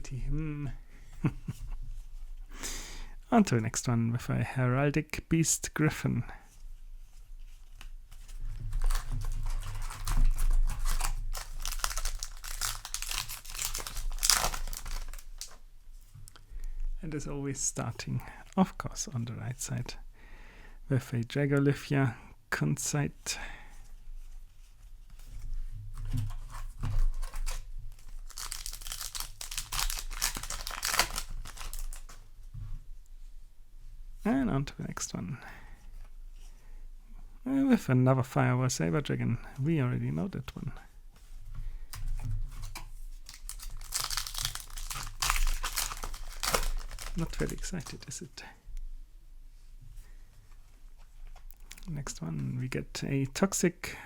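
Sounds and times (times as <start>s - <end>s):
foil wrapper crinkling and tearing: 8.3s - 15.6s, 26.5s - 32.2s, 42.6s - 48.3s.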